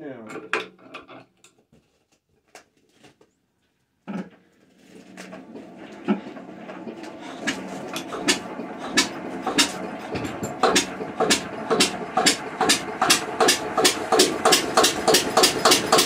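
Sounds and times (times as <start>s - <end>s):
diesel engine knocking: 6.8s - 16.0s.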